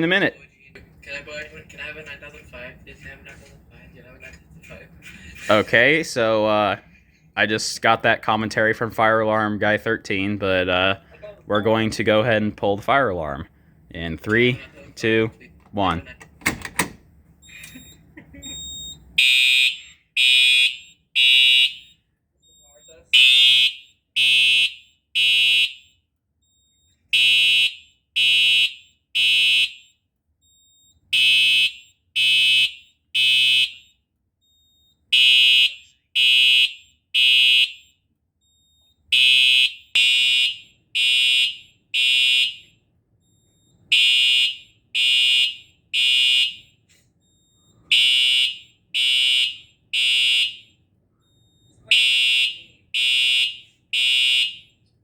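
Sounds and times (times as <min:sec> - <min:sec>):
fire alarm horn blasts: 0:17.8 - 0:54.8.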